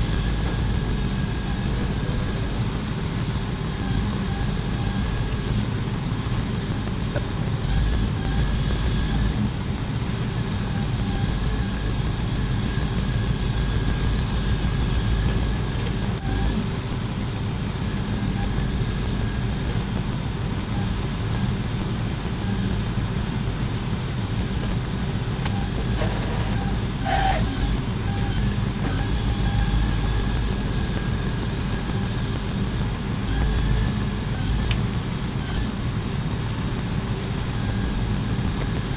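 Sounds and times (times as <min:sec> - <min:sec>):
whining tones: 0:00.0 - 0:38.9
heavy engine rumbling: 0:24.2 - 0:37.9.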